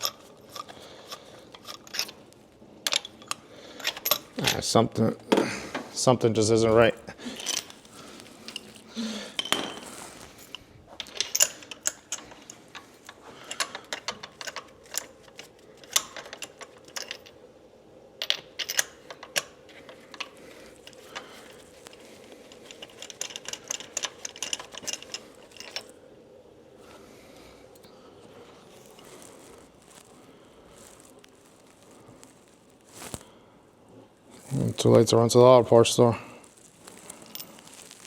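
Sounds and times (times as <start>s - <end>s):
metal tools tapping: 8.5s - 9.9s, 18.2s - 25.9s.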